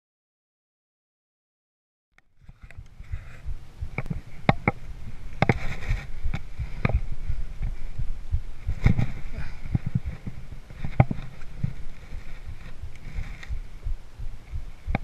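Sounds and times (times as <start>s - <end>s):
sharp knocks and clacks: 2.5s - 4.8s.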